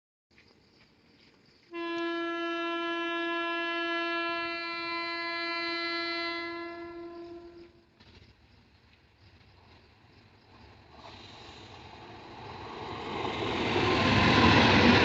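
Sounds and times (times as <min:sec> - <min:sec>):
locomotive horn blast: 0:01.7 - 0:07.8.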